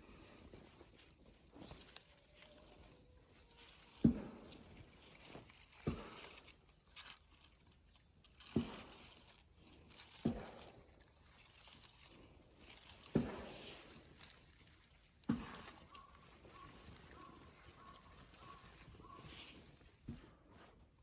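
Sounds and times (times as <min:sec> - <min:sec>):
faint rustling and crinkling: 0:00.0 - 0:21.0.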